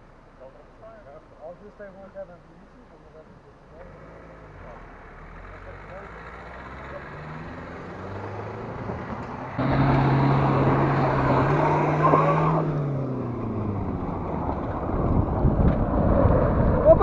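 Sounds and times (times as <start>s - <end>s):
car engine revving: 3.6s - 17.0s.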